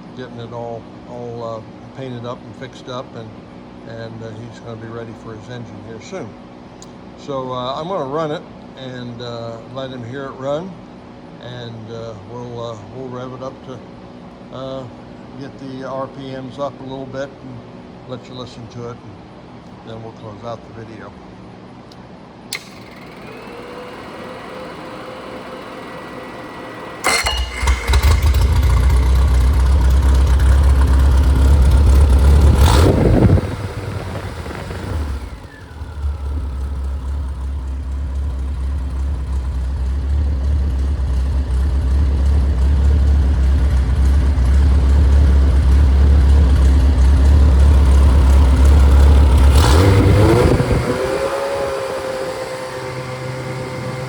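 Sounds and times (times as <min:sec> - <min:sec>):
car engine revving: 0:24.5 - 0:54.0.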